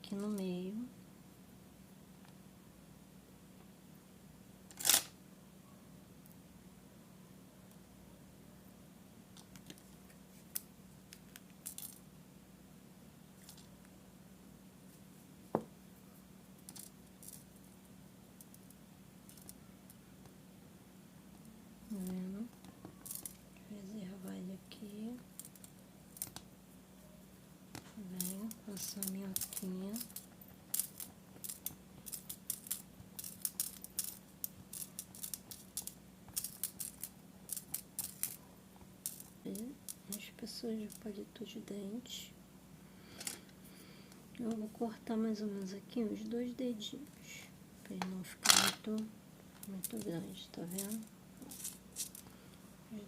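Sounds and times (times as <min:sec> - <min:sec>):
low steady hum: 0:00.0 - 0:53.0
craft materials clicking and rustling: 0:27.8 - 0:38.4.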